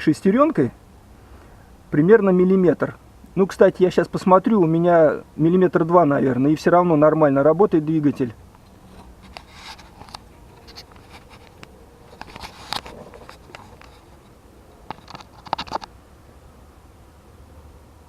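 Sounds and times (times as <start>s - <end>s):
light clicks and scrapes: 8.5s - 16.0s.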